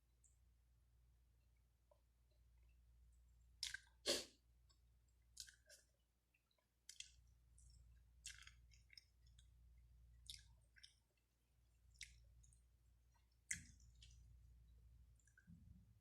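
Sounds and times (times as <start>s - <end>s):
person chewing food: 3.6s - 14.5s, 15.1s - 15.5s.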